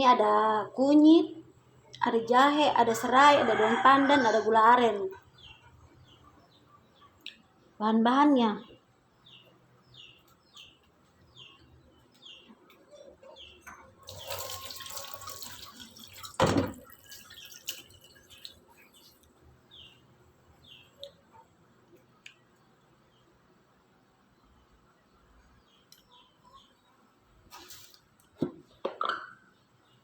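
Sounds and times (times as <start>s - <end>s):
bird chirping: 8.6s - 14.6s, 16.9s - 21.5s, 24.4s - 27.1s
water running: 14.0s - 19.4s.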